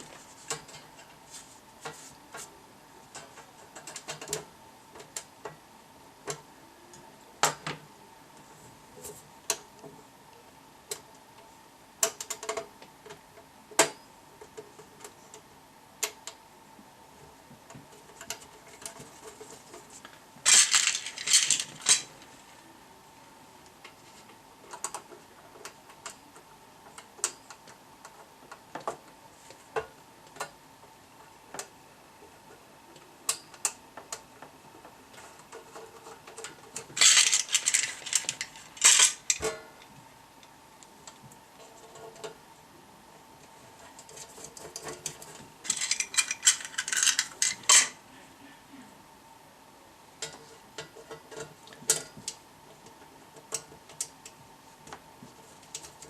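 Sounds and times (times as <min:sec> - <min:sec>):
faint steady tone: 0:00.0 - 0:36.8
metal parts and tools rattling: 0:20.5 - 0:22.3, 0:35.6 - 0:39.7, 0:44.0 - 0:48.0.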